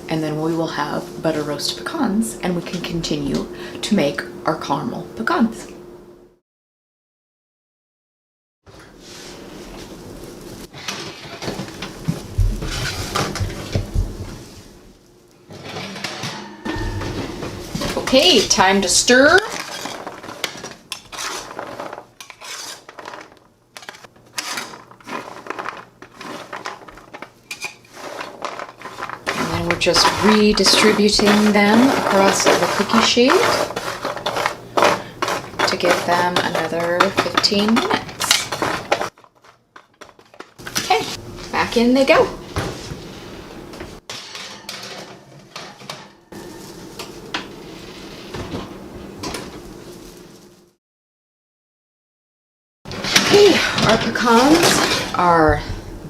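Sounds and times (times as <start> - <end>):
steady low hum: 12.1 - 20.1
nuts scraping on metal pan: 17.8 - 39.2, 52.9 - 55.4.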